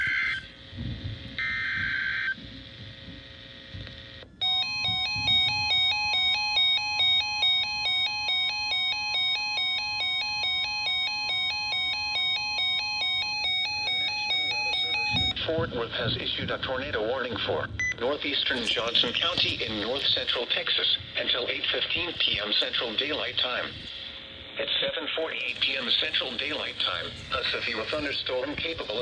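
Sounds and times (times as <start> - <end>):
two-pitch alarm: 0.0 - 0.6, 1.4 - 2.4, 4.4 - 15.5, 21.4 - 29.0
steady warning alarm tone: 0.0 - 29.0
buzzy digital data bursts: 18.2 - 29.0.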